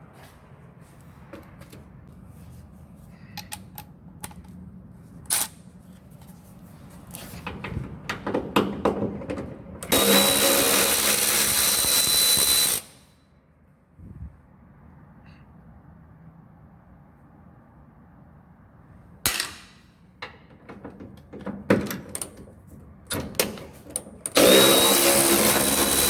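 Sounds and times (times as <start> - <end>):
cordless ratchet whining: 9.9 - 12.9, 24.3 - 26.0
tool clicks and knocks: 19.3 - 22.5.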